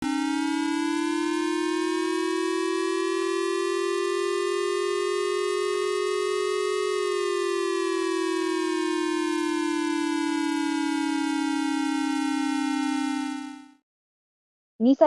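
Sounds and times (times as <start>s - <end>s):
warning siren rising tone: 0.0s - 13.8s.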